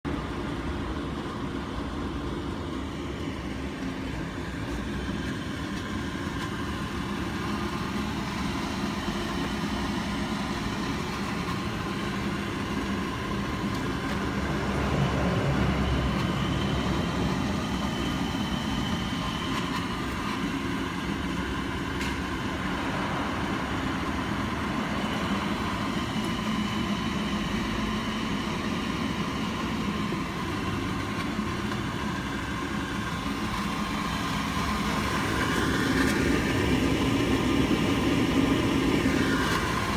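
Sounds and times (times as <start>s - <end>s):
melting furnace humming: 0.0s - 39.9s.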